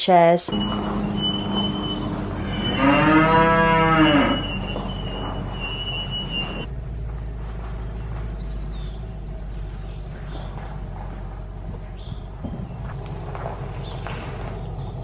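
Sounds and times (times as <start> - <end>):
steady background hum: 0.5 - 15.0
cow mooing: 0.6 - 6.6.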